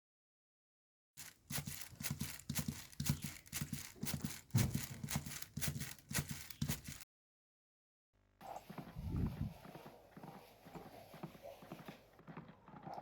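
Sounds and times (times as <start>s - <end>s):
galloping hoofbeats: 1.2s - 7.0s, 8.4s - 13.0s.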